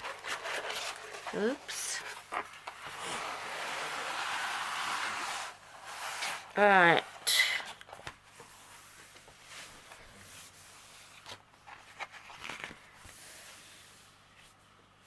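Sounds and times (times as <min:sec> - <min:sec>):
plastic sheet rustling and crinkling: 0:00.0 - 0:06.6.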